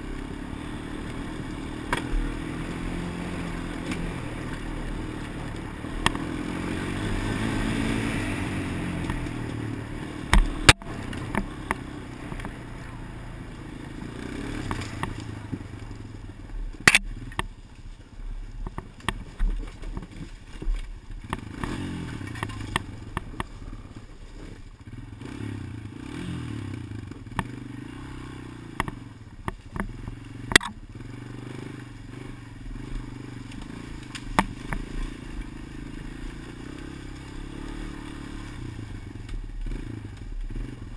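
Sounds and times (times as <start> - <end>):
vehicle engine running: 0.0 - 40.9.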